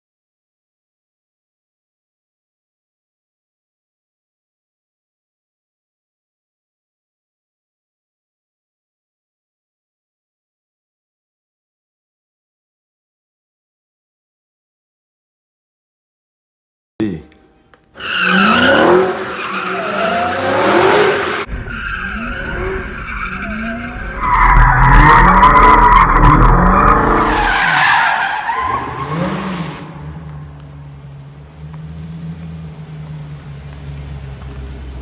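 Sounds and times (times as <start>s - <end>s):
tyres squealing: 18.0s - 30.2s
car engine revving: 18.0s - 35.0s.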